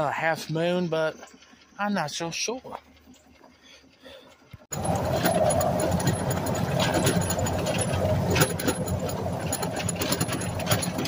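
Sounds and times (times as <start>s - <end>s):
engine running low rumble: 0.0s - 11.0s
rattling clicks: 4.3s - 11.0s.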